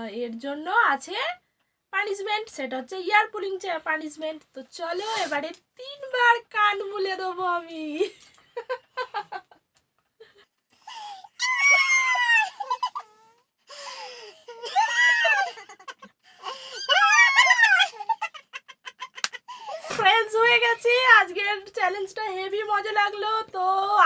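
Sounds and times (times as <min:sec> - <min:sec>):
person shrieking: 0:10.9 - 0:13.2, 0:14.6 - 0:15.7, 0:16.6 - 0:18.1
breathy laughing: 0:12.2 - 0:20.0.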